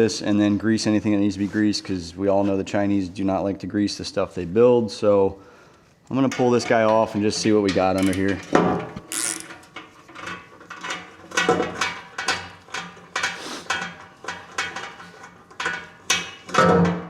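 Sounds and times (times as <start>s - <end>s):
ratchet wrench clicking: 8.0s - 8.4s, 9.0s - 9.7s.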